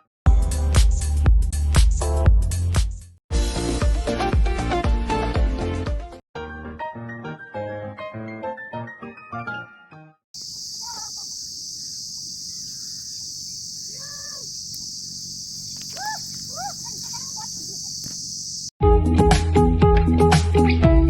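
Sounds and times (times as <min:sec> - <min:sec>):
insect chorus shrilling: 0:10.4 - 0:18.7
short bird calls: 0:10.4 - 0:18.7.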